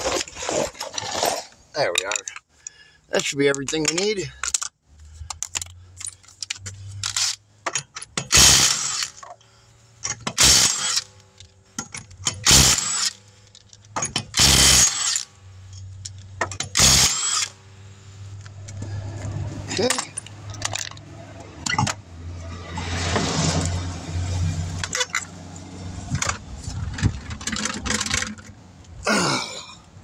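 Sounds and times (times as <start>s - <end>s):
power tool removing lug nuts: 6.4s - 9.4s, 10.0s - 17.8s, 26.0s - 28.6s
low hum: 8.3s - 29.8s.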